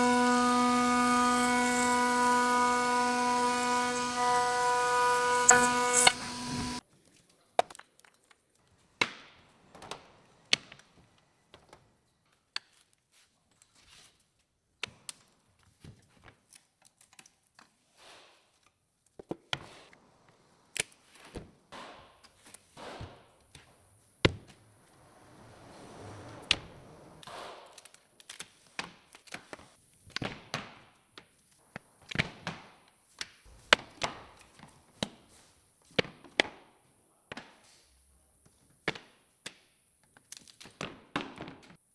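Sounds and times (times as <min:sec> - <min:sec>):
board scraping: 0:00.0 - 0:06.8.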